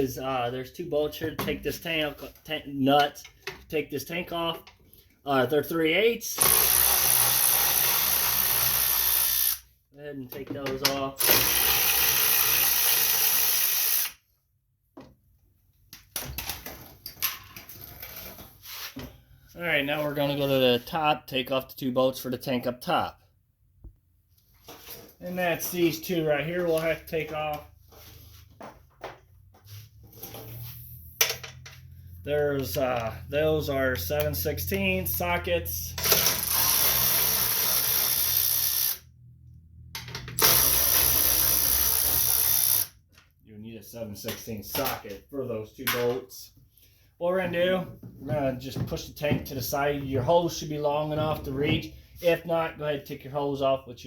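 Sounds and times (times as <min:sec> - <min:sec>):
power drill spinning: 0:06.4 - 0:09.6, 0:11.2 - 0:14.2, 0:36.0 - 0:39.1, 0:40.4 - 0:43.0.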